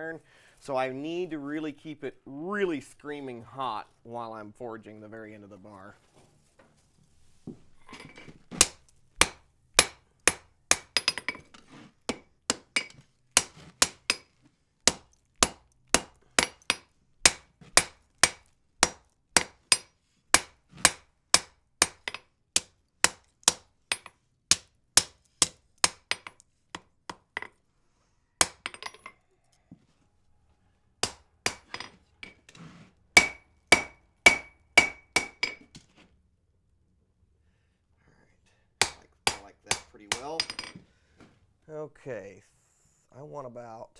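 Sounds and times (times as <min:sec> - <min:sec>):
hammer forging iron on anvil: 0:07.9 - 0:11.4, 0:12.1 - 0:14.3, 0:14.9 - 0:27.5, 0:28.4 - 0:29.2, 0:31.0 - 0:32.4, 0:33.2 - 0:35.6, 0:38.8 - 0:40.8.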